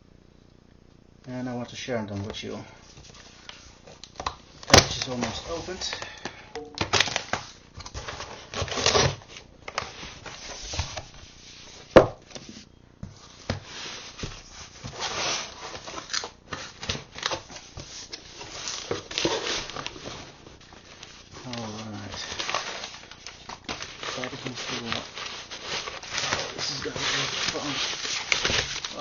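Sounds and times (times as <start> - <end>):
tape and packing material tearing: 6.8 - 10.0, 14.9 - 17.4, 21.4 - 29.0.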